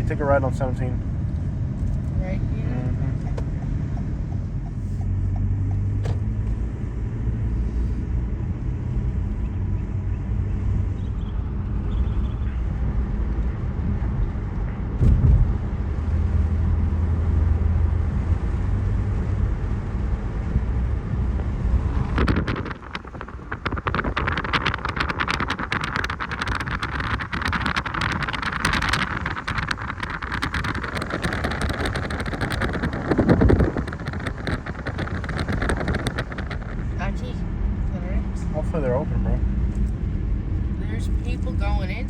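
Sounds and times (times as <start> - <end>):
car engine and road drone: 0.0 - 42.0
dense crackling rustling noise: 0.0 - 42.0
thump: 6.0 - 6.6, 15.0 - 15.6.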